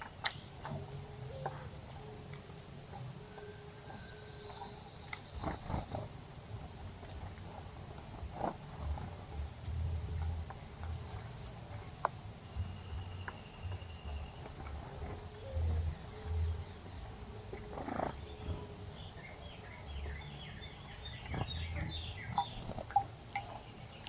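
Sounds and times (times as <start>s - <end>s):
low rumble: 6.5s - 11.8s.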